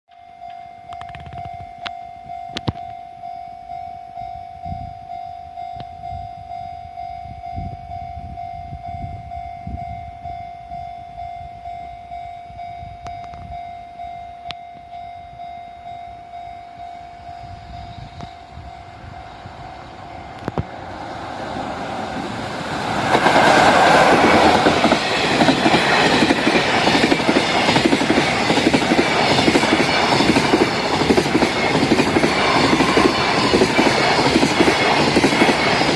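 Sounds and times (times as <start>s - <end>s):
level-crossing alarm ringing: 0.1s - 22.8s, 23.4s - 35.9s
freight train passing: 4.2s - 35.9s
wheels clacking over rail joints: 20.4s - 35.9s.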